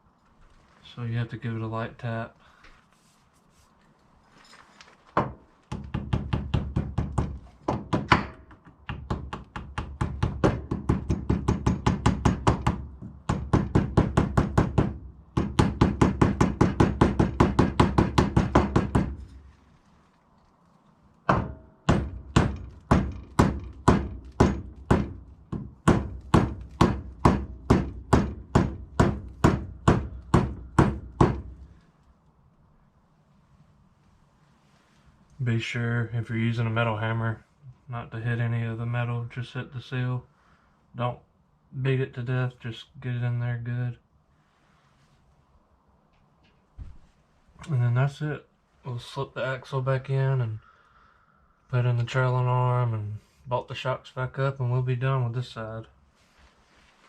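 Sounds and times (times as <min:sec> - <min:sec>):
hammer tapping: 0:05.2 - 0:19.4, 0:21.3 - 0:31.6.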